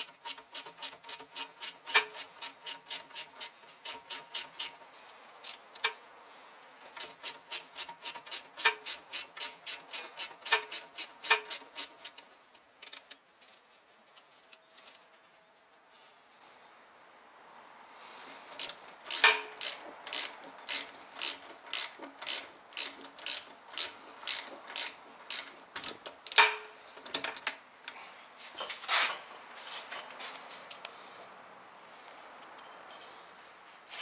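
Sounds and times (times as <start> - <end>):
ratchet wrench clicking: 0.0 - 4.8, 5.4 - 6.0, 6.8 - 12.2, 12.8 - 13.2, 18.5 - 26.5.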